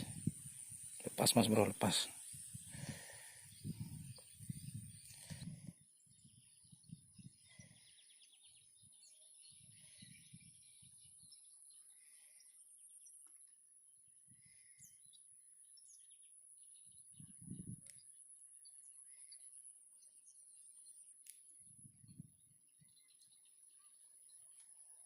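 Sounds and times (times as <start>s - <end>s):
low rumbles on microphone: 3.5s - 5.7s.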